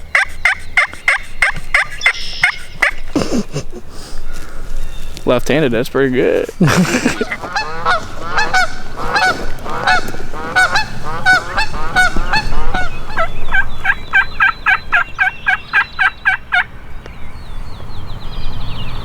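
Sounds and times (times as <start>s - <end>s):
turkey call yelps and clucks: 0.1s - 3.1s, 7.0s - 16.7s.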